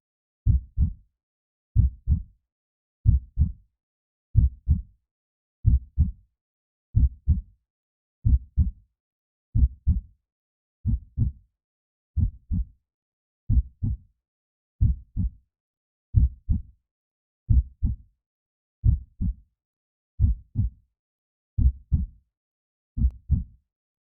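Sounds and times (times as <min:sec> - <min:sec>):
heartbeat double thumps: 0:00.5 - 0:01.0, 0:01.8 - 0:02.2, 0:03.1 - 0:03.6, 0:04.4 - 0:04.8, 0:07.0 - 0:07.4, 0:08.3 - 0:08.7, 0:09.6 - 0:10.0, 0:10.9 - 0:11.3, 0:12.2 - 0:12.6, 0:14.8 - 0:15.3, 0:16.2 - 0:16.6, 0:18.8 - 0:19.4, 0:20.2 - 0:20.7, 0:21.6 - 0:22.1.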